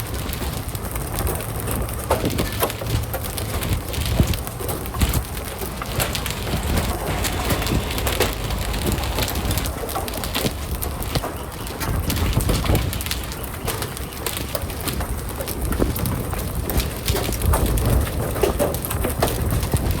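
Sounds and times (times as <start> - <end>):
low rush of storm: 0.0 - 14.9
hailstones striking hard surfaces: 0.0 - 20.0.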